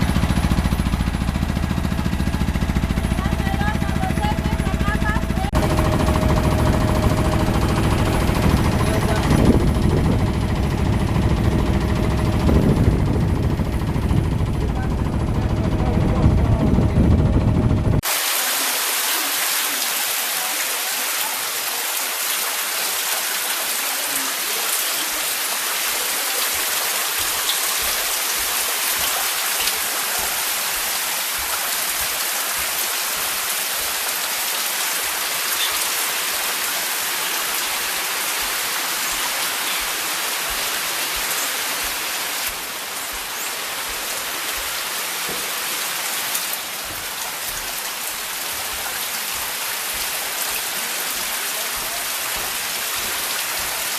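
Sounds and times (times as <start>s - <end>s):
steady hiss of water: 18.0s - 53.9s.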